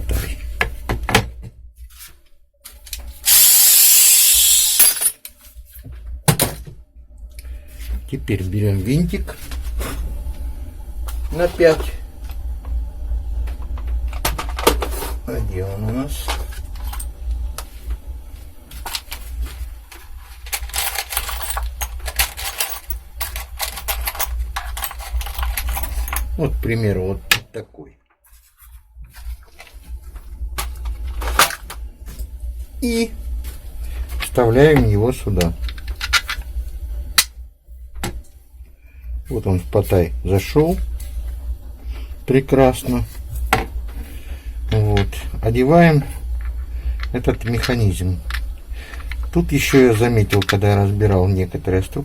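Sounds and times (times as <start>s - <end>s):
cordless drill running: 3.2s - 5.1s
metal screws rattling: 3.3s - 5.2s
steady low hum: 6.9s - 27.3s.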